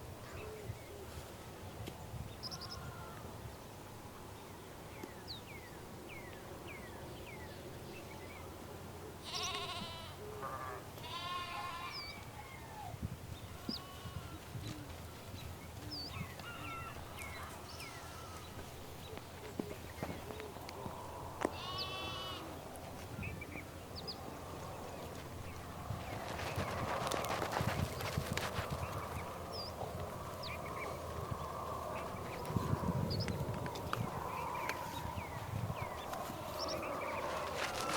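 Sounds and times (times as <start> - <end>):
goat bleating: 9.2 - 10.2, 11.0 - 12.0, 21.6 - 22.5.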